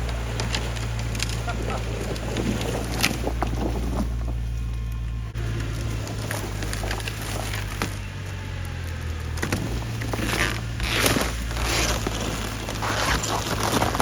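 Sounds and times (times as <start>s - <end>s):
engine idling: 0.0s - 14.0s
rustling and crackling: 0.0s - 14.0s.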